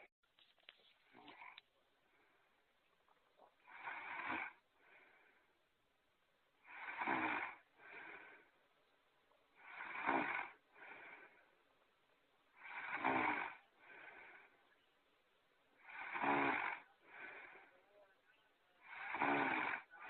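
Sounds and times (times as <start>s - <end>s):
soft breath: 0.6s - 5.8s, 6.6s - 15.1s, 15.7s - 20.0s
cartoon snoring: 3.6s - 5.0s, 6.6s - 8.4s, 9.6s - 11.3s, 12.6s - 14.5s, 15.8s - 17.7s, 18.8s - 20.0s.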